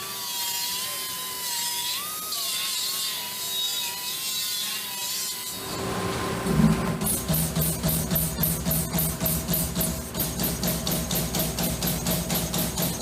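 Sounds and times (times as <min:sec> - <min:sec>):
music with drum beat: 0:07.1 - 0:13.0.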